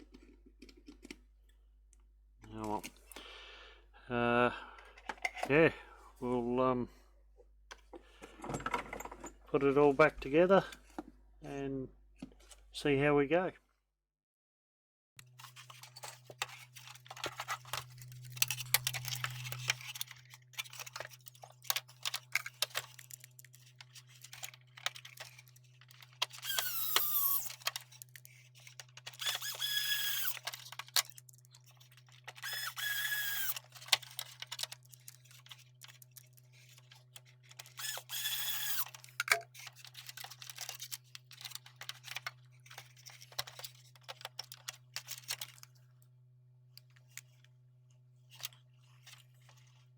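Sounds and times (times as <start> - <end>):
plastic parts clicking and rattling: 0.0 - 1.6, 4.8 - 5.6, 15.2 - 46.1, 46.7 - 47.5, 48.2 - 49.9.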